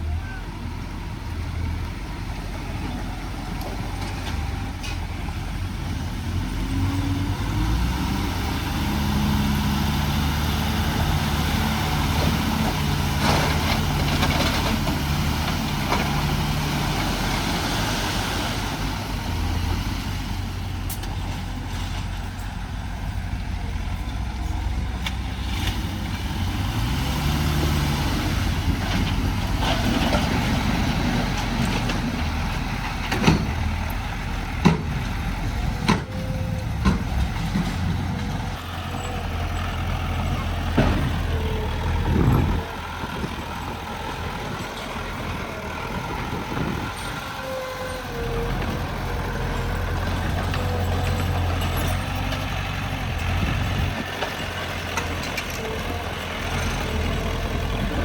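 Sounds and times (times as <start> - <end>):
diesel machine engine revving: 0.0 - 58.0.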